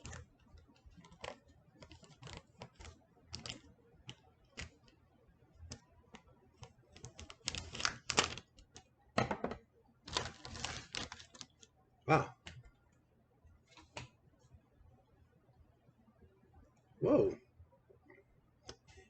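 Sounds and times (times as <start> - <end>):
plastic wrapping crinkling: 0.9 - 3.6, 7.0 - 8.5, 10.1 - 11.7.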